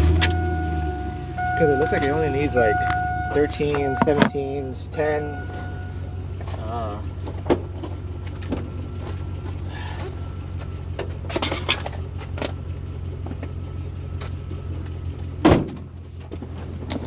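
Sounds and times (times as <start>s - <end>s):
truck engine idling: 0.0s - 17.0s
loud thump: 15.4s - 15.8s.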